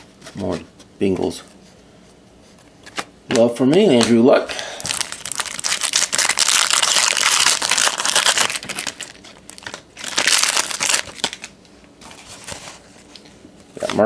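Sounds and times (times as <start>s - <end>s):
plastic wrapper crinkling: 4.8s - 14.0s.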